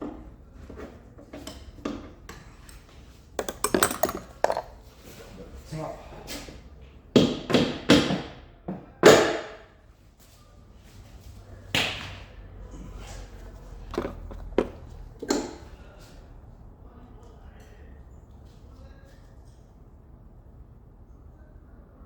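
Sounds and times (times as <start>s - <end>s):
hand tools knocking and clanking: 3.4s - 4.9s, 13.9s - 15.7s.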